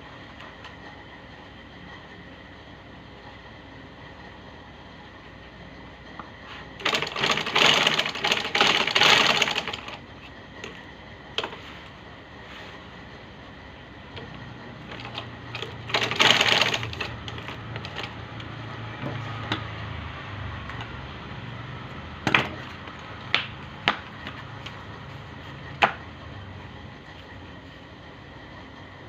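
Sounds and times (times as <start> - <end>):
low steady hum: 0.0 - 29.0
sewing machine stitching: 6.8 - 10.0, 11.4 - 11.6, 14.2 - 18.2.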